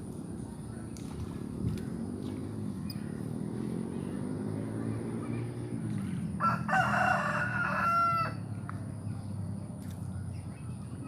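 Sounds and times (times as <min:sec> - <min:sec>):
steady low rumble: 0:00.0 - 0:06.4
rooster crowing: 0:06.4 - 0:08.5.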